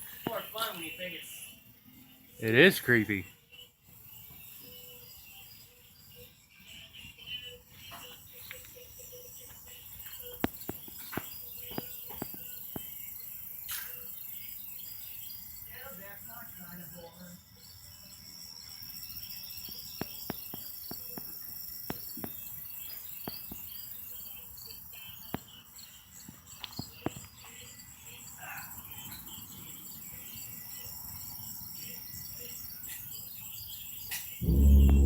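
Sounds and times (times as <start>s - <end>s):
insects chirping: 0.0s - 35.0s
loud low multi-tone sound: 34.4s - 35.0s.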